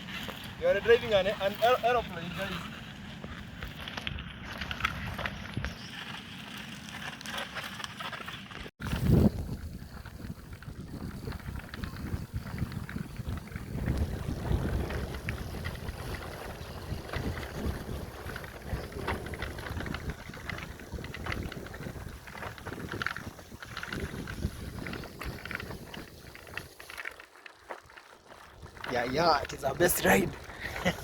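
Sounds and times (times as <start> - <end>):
bicycle clicks and rattles: 3.2 - 31.0
wind rumbling on microphone: 8.8 - 27.2, 28.3 - 31.0.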